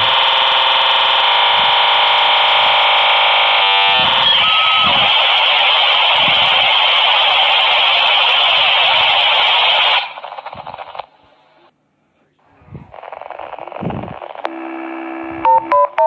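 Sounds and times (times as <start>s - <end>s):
modem tones: 0.0s - 11.1s, 12.5s - 16.0s
data noise hiss: 2.1s - 14.6s.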